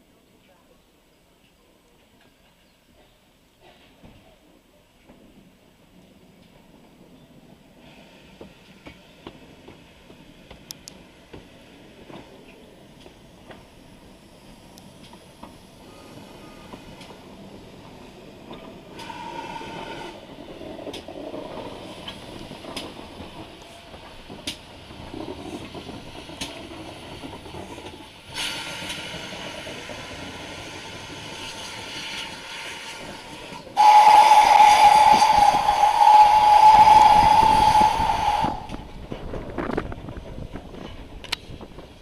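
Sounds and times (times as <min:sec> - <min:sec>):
steam locomotive working: 0:04.8 - 0:42.0
steam hissing: 0:11.0 - 0:20.6, 0:21.4 - 0:39.0
steam whistle blast: 0:19.0 - 0:20.2, 0:33.8 - 0:38.8.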